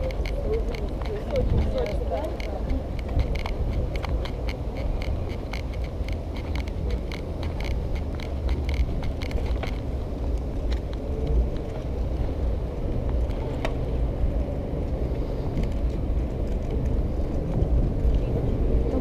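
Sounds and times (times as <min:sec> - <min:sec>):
rattling clicks: 0:00.0 - 0:09.9
wind and road rumble: 0:00.0 - 0:19.0.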